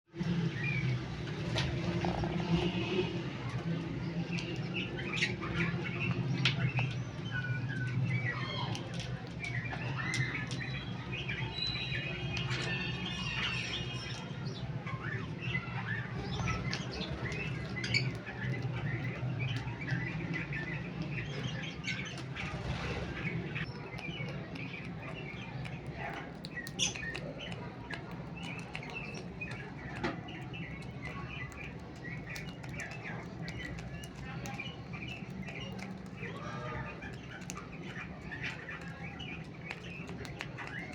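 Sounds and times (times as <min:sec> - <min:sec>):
cockatiels chirping: 0:00.2 - 0:40.9
beaks cracking seeds: 0:16.2 - 0:40.9.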